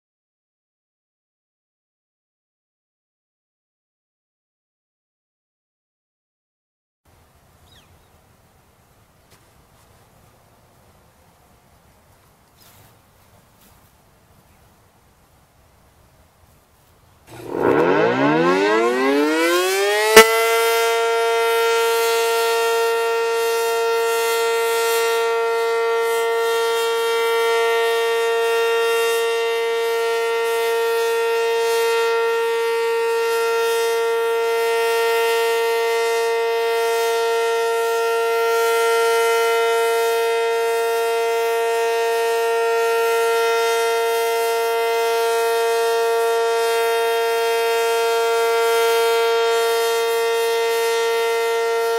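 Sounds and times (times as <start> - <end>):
storm siren rising tone: 17.3 - 40.6, 48.8 - 51.9.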